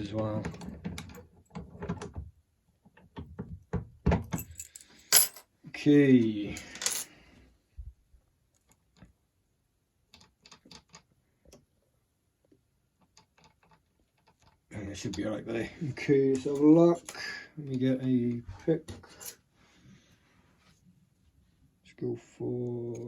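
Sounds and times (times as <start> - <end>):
padlock and keys clinking: 4.3 - 5.4.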